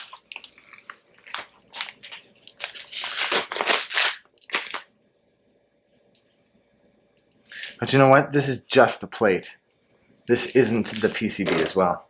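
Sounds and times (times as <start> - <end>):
packaging crinkling and crunching: 0.0 - 4.9, 10.3 - 11.9.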